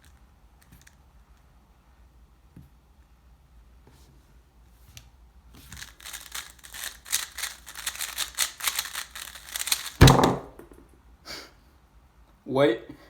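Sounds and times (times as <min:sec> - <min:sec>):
puzzle cube clicking rattle: 0:00.0 - 0:01.0, 0:05.6 - 0:10.2.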